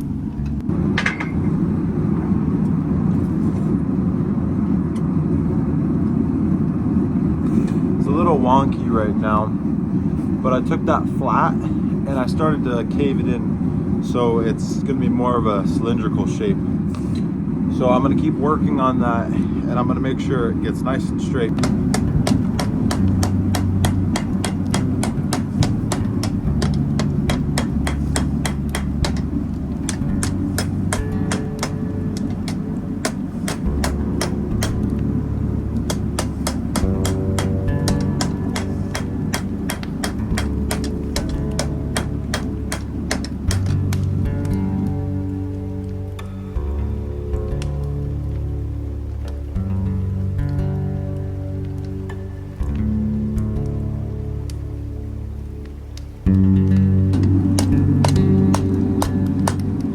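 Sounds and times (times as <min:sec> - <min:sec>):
low rumbling roar: 0:00.0 - 0:59.9
hammer striking hot steel: 0:00.4 - 0:01.6, 0:21.4 - 0:45.0, 0:56.7 - 0:59.9.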